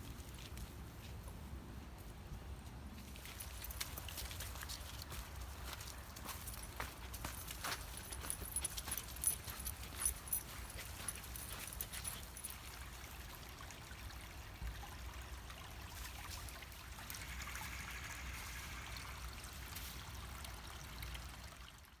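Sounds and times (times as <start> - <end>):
creek water trickling: 3.0 - 22.0.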